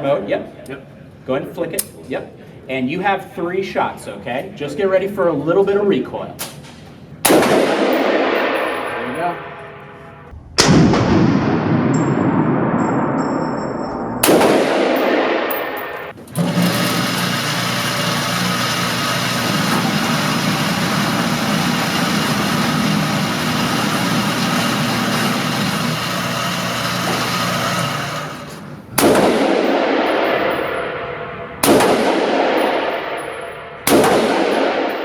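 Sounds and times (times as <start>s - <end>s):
rifle shots echoing: 7.2s - 9.9s, 10.6s - 16.2s, 28.3s - 35.0s.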